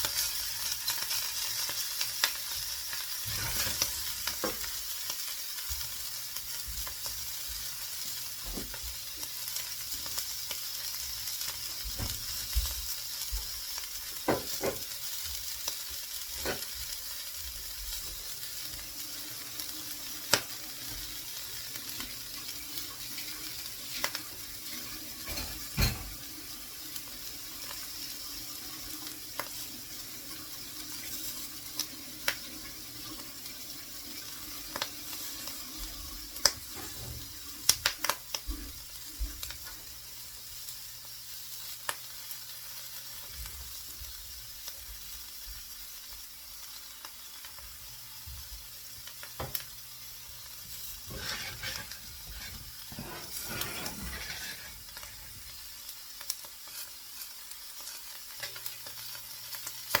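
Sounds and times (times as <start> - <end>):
food sizzling in a frying pan: 0.0 - 60.0.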